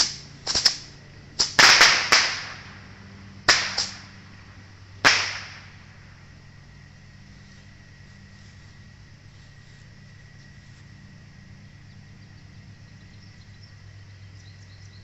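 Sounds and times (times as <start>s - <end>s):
firework rockets popping: 0.0s - 2.8s, 3.4s - 4.2s, 5.0s - 5.9s
rocket hiss: 0.0s - 6.2s.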